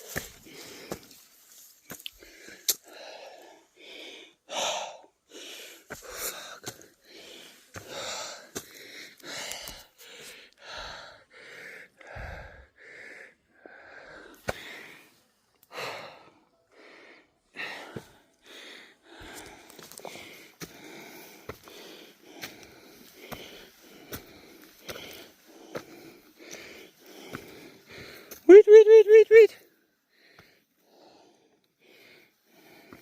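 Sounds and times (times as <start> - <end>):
heavy rasping breathing: 2.2 - 28.4.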